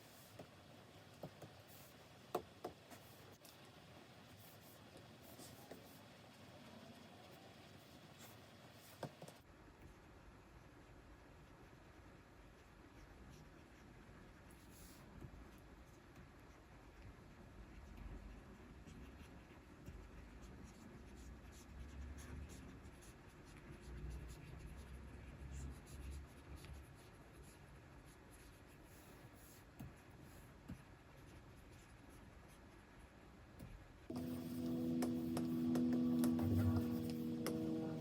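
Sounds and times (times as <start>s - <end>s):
stylus scratching on screen: 34.1s - 38.0s.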